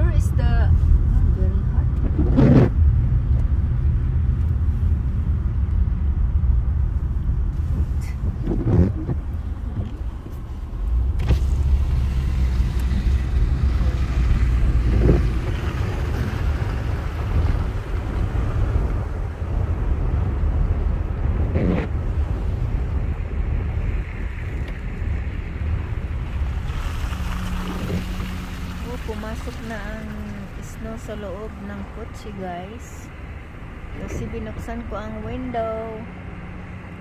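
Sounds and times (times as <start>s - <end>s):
car engine rumble: 0.0s - 37.0s
tyres on road: 0.0s - 37.0s.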